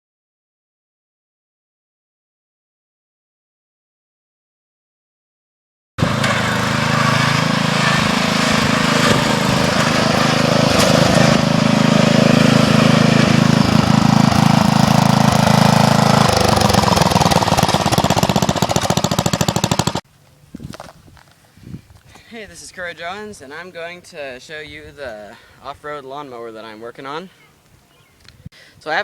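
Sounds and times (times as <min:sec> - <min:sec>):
lawn tractor engine running: 0:06.0 - 0:20.0.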